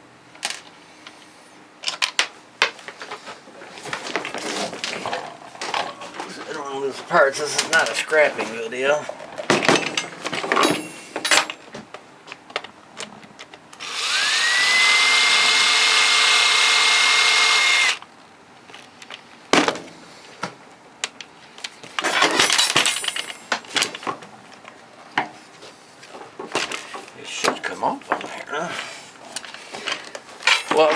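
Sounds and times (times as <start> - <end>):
power drill driving a screw: 13.8 - 18.0.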